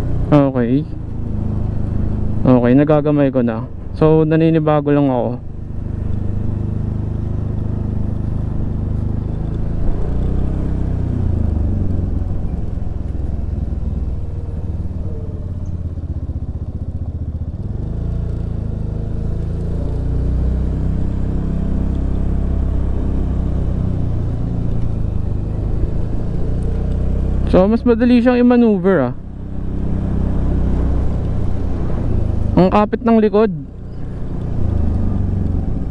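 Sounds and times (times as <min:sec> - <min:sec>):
scooter engine running: 0:05.4 - 0:32.8.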